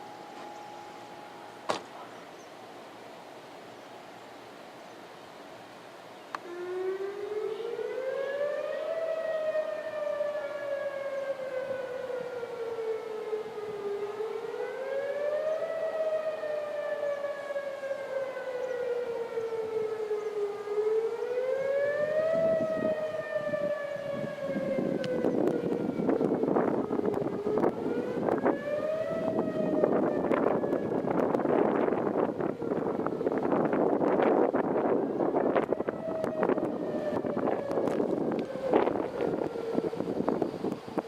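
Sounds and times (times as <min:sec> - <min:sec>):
warning siren wailing: 0:00.0 - 0:04.5, 0:06.3 - 0:41.0
wind buffeting microphone: 0:18.9 - 0:41.0.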